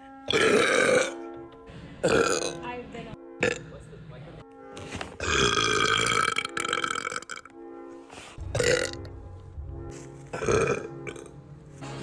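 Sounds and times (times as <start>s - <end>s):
background music: 0.0s - 12.0s
woman burping loudly: 0.3s - 1.3s, 2.0s - 2.6s, 3.4s - 3.7s, 5.2s - 7.5s, 8.6s - 9.1s, 10.4s - 11.3s.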